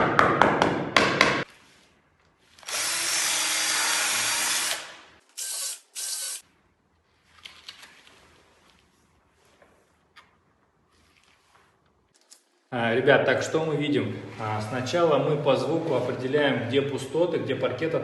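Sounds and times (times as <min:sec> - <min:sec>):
small electric drill running: 0:02.6 - 0:06.4.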